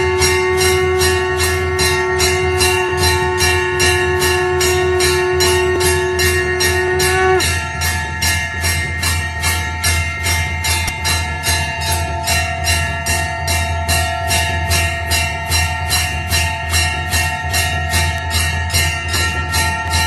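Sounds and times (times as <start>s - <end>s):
held pitched tone: 0.0s - 8.0s
temple bells ringing rapidly: 0.0s - 20.0s.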